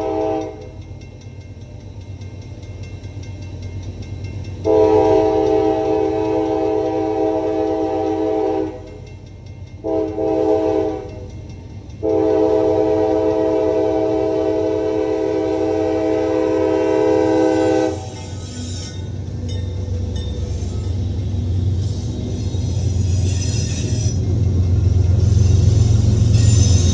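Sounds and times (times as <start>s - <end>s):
locomotive air horn blasts: 0.0s - 0.6s, 4.7s - 8.8s, 9.8s - 11.2s, 12.0s - 18.2s
freight train rumbling: 0.0s - 26.9s.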